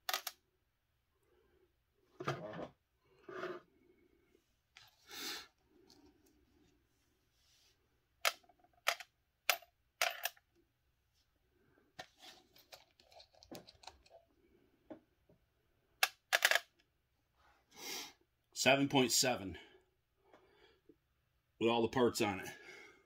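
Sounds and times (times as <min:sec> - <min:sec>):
small parts clicking on plastic: 0:00.0 - 0:00.4
soft handling noise: 0:12.0 - 0:14.3.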